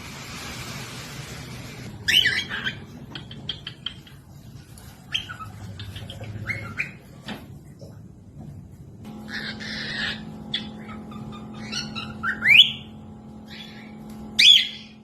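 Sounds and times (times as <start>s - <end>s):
parrot squawking: 1.9s - 4.2s, 5.0s - 7.2s, 9.1s - 15.0s
parrot chirping: 1.9s - 7.2s, 9.1s - 15.0s.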